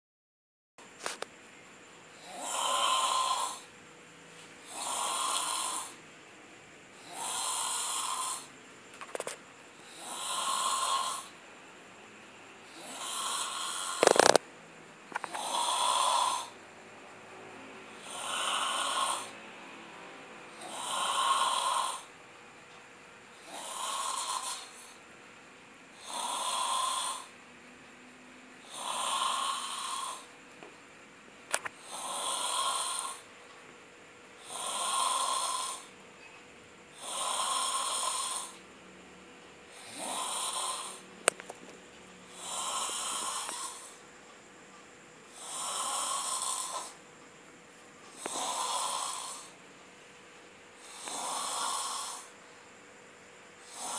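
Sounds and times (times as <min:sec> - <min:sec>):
person snoring: 0:02.2 - 0:03.7, 0:04.6 - 0:06.0, 0:06.9 - 0:08.5, 0:09.8 - 0:11.4, 0:12.6 - 0:14.4, 0:15.1 - 0:16.6, 0:18.0 - 0:19.5, 0:20.5 - 0:22.2, 0:23.3 - 0:25.0, 0:25.9 - 0:27.3, 0:28.6 - 0:30.2, 0:31.8 - 0:33.3, 0:34.4 - 0:36.0, 0:36.9 - 0:38.6, 0:39.7 - 0:41.1, 0:42.3 - 0:44.0, 0:45.3 - 0:47.0, 0:48.1 - 0:49.6, 0:50.8 - 0:52.4, 0:53.6 - 0:53.9.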